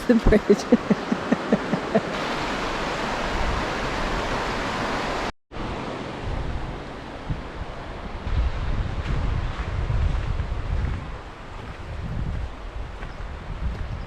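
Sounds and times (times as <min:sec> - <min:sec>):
rushing river water: 0:00.0 - 0:11.8
wind buffeting microphone: 0:06.2 - 0:14.0.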